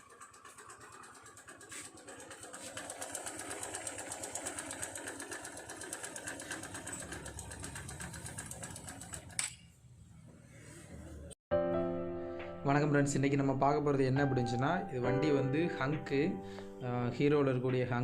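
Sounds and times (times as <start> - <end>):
engine knocking: 0.0 - 9.2.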